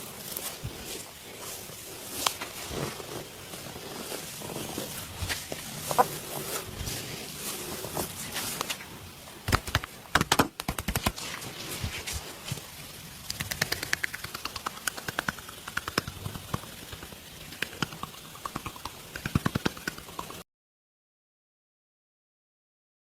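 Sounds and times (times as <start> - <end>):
hands slapping on skin: 9.5 - 11.2.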